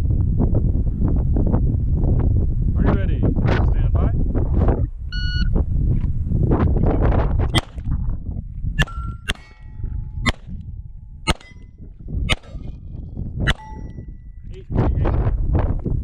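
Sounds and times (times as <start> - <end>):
pistol shots: 7.6 - 7.8, 8.8 - 10.6, 11.3 - 11.7, 12.3 - 12.7, 13.5 - 14.0
steel target ringing: 8.8 - 12.7, 13.5 - 14.4.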